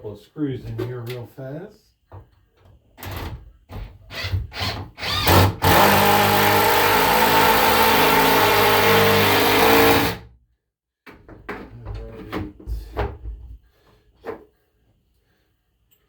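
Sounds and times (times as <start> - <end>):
power drill driving screw into wood: 4.1 - 10.2.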